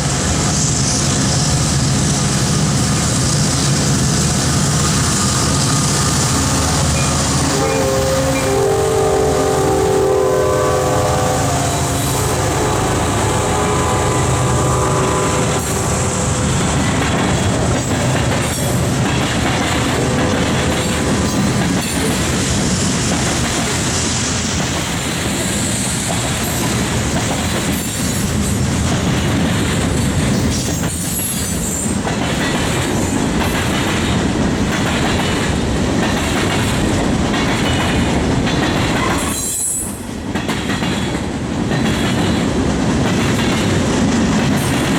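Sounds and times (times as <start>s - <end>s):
high wheel squeal: 4.6s - 17.5s
locomotive horn: 5.4s - 17.0s, 19.8s - 21.6s
train wheels clickety-clack: 15.0s - 44.9s.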